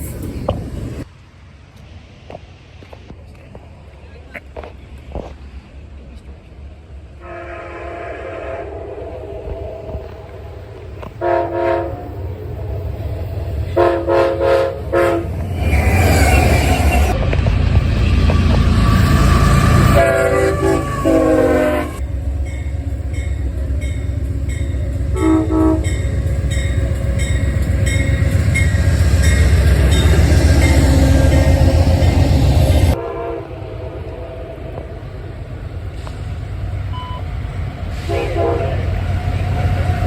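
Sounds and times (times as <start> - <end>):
passing train rumble: 0.0 - 40.0
rail noise: 0.0 - 40.0
train horn blasts: 7.2 - 12.4, 13.7 - 15.4, 18.3 - 35.0, 37.9 - 40.0.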